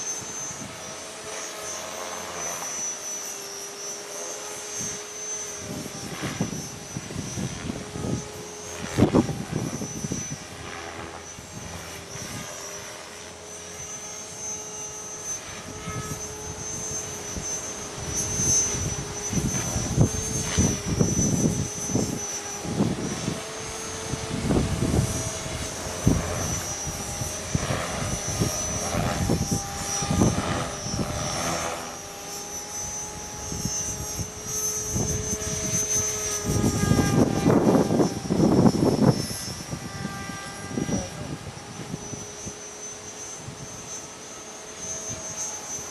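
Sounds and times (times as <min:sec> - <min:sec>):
helicopter motor and rotor whine: 0:00.0 - 0:45.9
wind buffeting microphone: 0:05.6 - 0:12.5, 0:15.6 - 0:31.9, 0:33.0 - 0:42.5.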